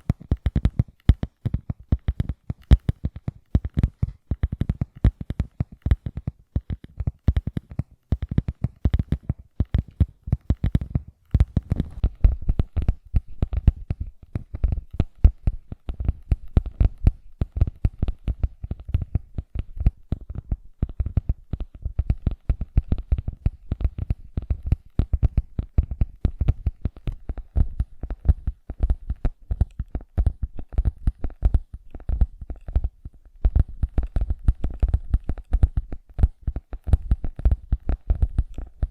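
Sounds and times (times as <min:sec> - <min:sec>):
fingertips tapping rapidly: 0:00.0 - 0:38.9.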